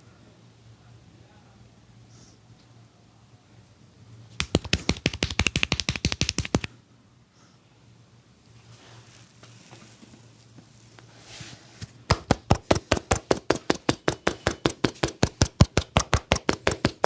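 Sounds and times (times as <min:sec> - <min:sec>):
hands slapping in percussive massage: 0:04.4 - 0:06.8, 0:12.0 - 0:17.0.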